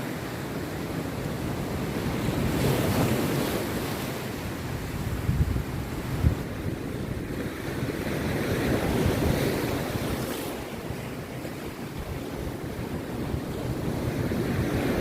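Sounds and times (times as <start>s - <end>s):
sea surf breaking on beach: 0.0s - 15.0s
wind buffeting microphone: 4.5s - 15.0s.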